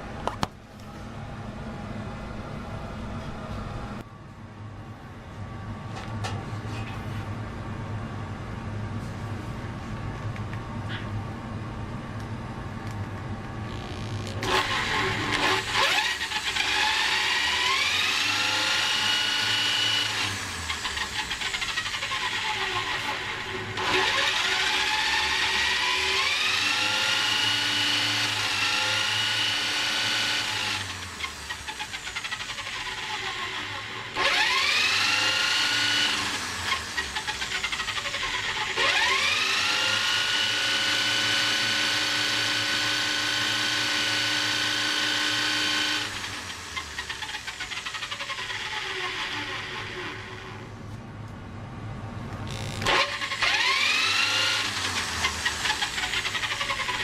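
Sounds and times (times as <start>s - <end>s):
small electric motor whining: 13.7s - 50.6s, 52.4s - 57.0s.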